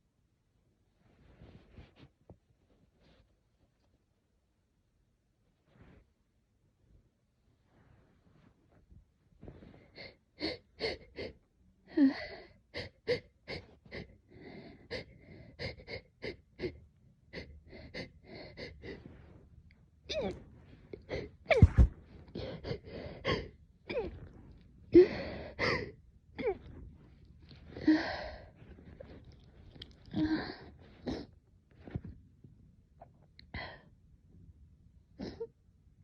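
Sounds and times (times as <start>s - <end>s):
person sneezing: 21.5s - 22.0s.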